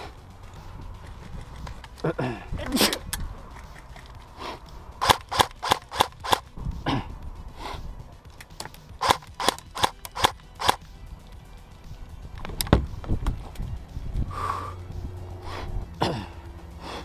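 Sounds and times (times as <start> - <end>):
airsoft gun shots: 5.0 - 6.4.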